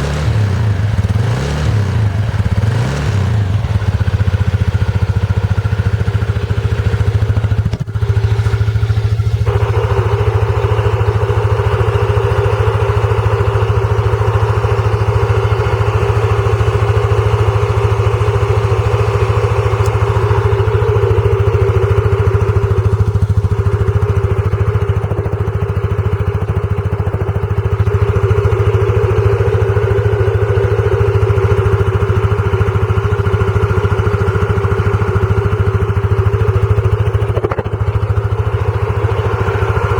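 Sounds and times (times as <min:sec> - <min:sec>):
scooter engine running: 0:00.0 - 0:39.9
abnormal noise from rear brake: 0:36.4 - 0:38.2.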